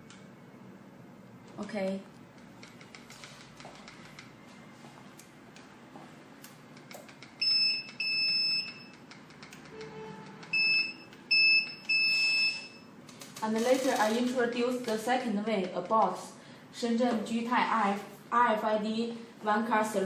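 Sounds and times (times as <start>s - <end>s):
alarm beeping at high pitch: 7.4s - 9.0s, 9.8s - 12.9s.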